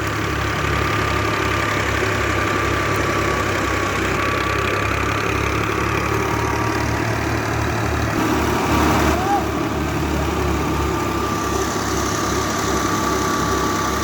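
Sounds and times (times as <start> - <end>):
thresher engine chugging: 0.0 - 14.0
thin high whine: 8.2 - 11.2.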